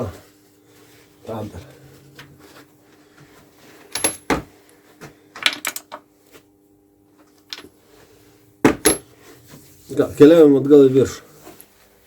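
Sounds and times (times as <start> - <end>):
metal tools clinking: 3.9 - 4.3.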